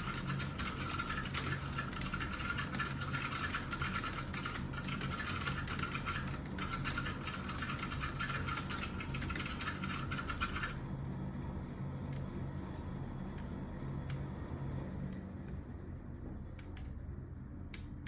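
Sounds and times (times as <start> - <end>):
fast typing on keyboard: 0.0 - 10.8
low steady hum: 0.0 - 18.0.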